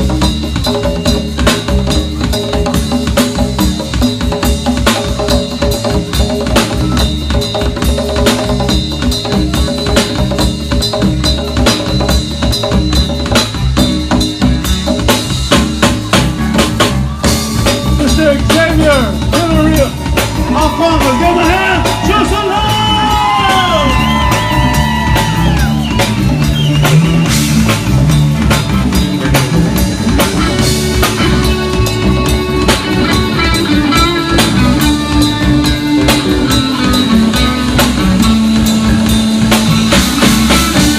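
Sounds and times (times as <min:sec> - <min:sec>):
rock band playing: 0:00.0 - 0:40.9
lead guitar melody bending notes: 0:27.6 - 0:40.9.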